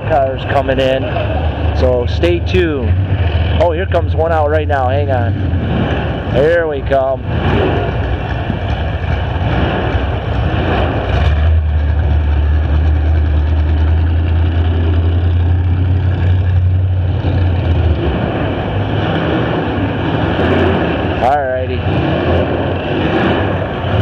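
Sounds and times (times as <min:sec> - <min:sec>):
car engine running loud: 0:00.0 - 0:24.0
deep steady low tone: 0:00.0 - 0:24.0.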